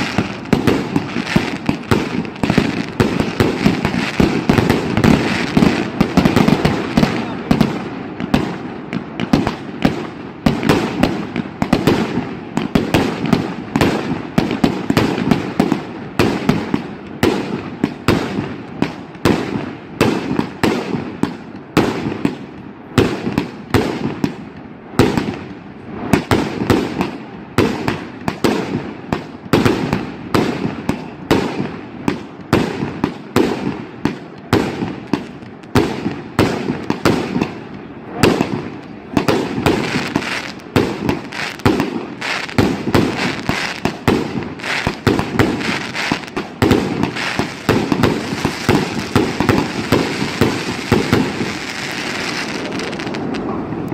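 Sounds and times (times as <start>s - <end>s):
fireworks bangs: 0.0s - 53.9s.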